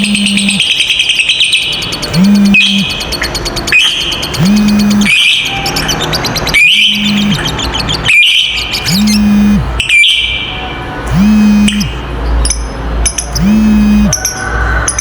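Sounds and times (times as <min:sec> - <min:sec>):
low humming note: 0:00.0 - 0:00.6, 0:02.1 - 0:02.9, 0:04.4 - 0:05.1, 0:06.9 - 0:07.4, 0:08.9 - 0:09.8, 0:11.1 - 0:12.0, 0:13.4 - 0:14.1
lovebird chirps and chattering: 0:00.0 - 0:10.0.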